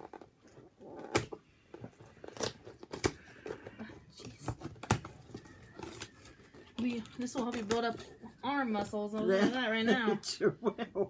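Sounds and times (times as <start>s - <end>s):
packaging rustling and tearing: 0.0s - 8.4s.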